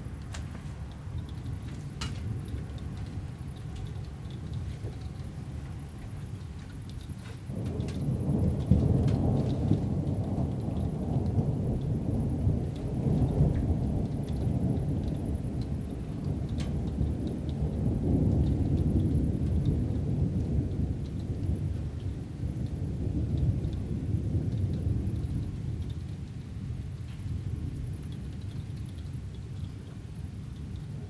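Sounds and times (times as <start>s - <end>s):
rolling thunder: 7.5s - 28.3s.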